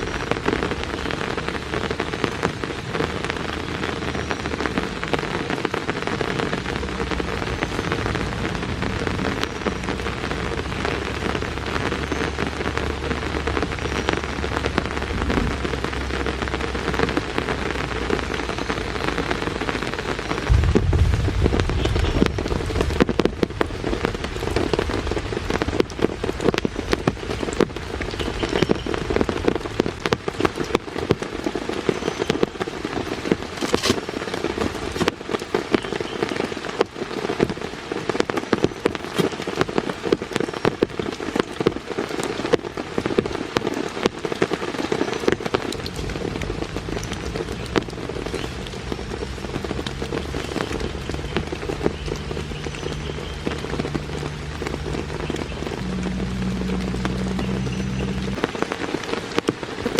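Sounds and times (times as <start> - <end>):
heavy rain falling: 0.0 - 59.9
deep low rumble: 6.4 - 19.6, 20.4 - 27.2, 45.8 - 58.4.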